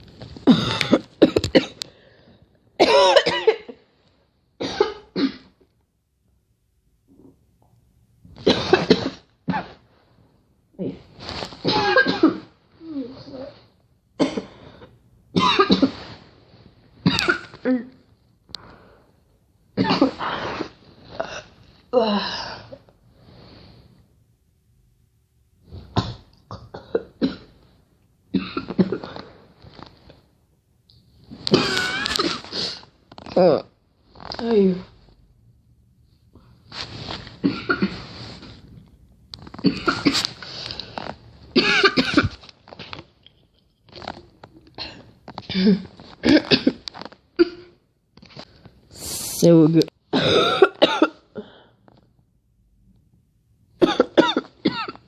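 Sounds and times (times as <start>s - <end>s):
girl coughing: 0.4s - 1.8s, 2.8s - 3.8s, 4.6s - 5.6s, 11.6s - 12.6s, 14.2s - 14.6s, 15.4s - 16.0s, 17.0s - 17.9s, 25.9s - 27.6s, 37.4s - 38.0s, 41.6s - 42.4s, 50.1s - 51.4s, 53.8s - 55.0s.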